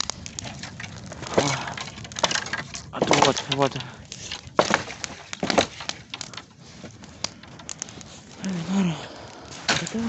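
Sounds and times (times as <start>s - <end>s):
bonfire crackling and popping: 0.0s - 10.0s
person's voice: 3.0s - 4.0s, 8.4s - 10.0s.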